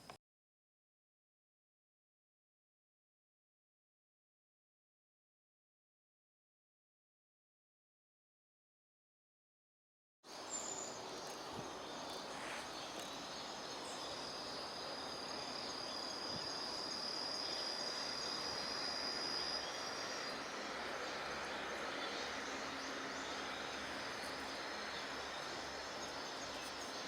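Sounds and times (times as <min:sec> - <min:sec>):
high-pitched insect trill: 0:10.3 - 0:27.0.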